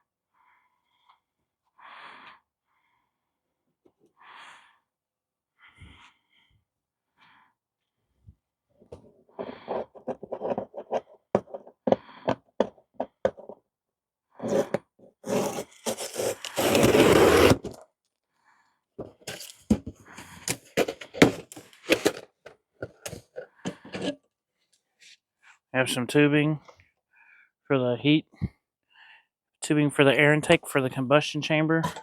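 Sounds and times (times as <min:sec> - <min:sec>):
parts knocking and rattling: 0:08.9 - 0:13.6, 0:19.0 - 0:24.2
packaging scraping rustle: 0:14.4 - 0:17.8, 0:19.0 - 0:24.1.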